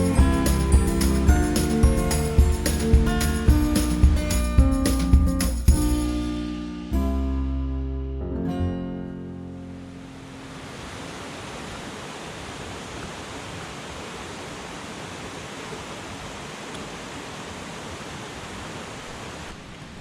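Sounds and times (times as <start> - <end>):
mountain stream rushing: 0.0 - 5.6, 9.7 - 20.0.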